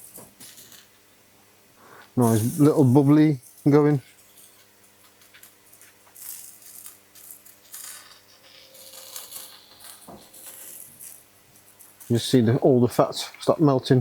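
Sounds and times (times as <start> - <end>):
chicken sizzling on a grill: 7.6 - 12.5.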